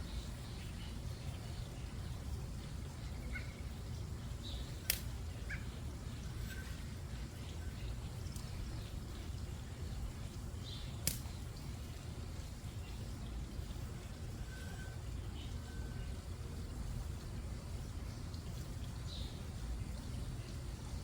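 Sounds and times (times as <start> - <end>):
bird chirps: 3.0 - 9.4
sharp clicks: 4.8 - 5.1.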